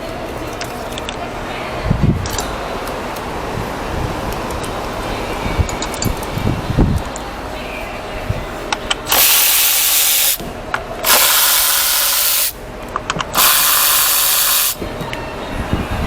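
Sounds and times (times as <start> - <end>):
air blow gun hissing blasts: 9.1 - 10.4, 11.0 - 12.6, 13.3 - 14.8.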